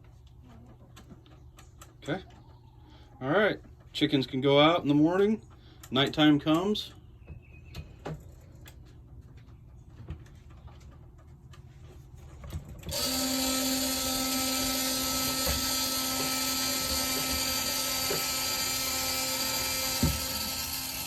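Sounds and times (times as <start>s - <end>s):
electric motor whining: 12.9s - 21.0s.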